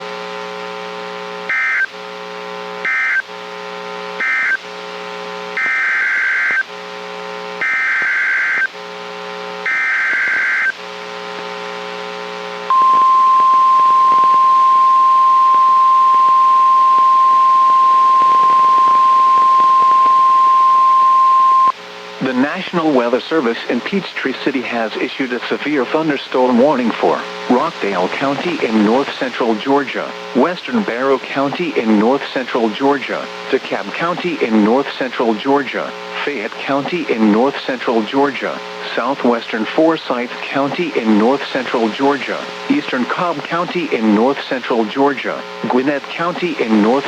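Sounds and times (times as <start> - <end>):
steady buzzing hum: 0.0 - 47.0
loud steady warning alarm tone: 12.7 - 21.8.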